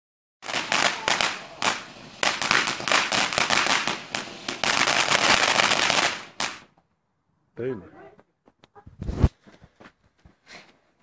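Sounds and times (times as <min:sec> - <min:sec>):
fireworks crackling: 0:00.4 - 0:06.7.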